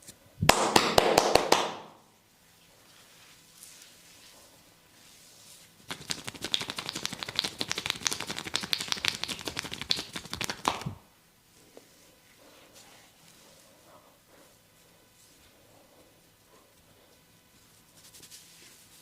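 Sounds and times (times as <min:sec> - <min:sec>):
hands striking skin rapidly: 0:00.5 - 0:01.9, 0:05.9 - 0:11.0.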